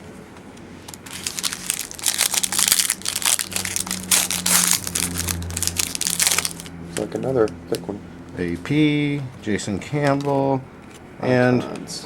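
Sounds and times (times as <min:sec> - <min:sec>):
plastic wrapper crinkling: 0:00.9 - 0:06.7.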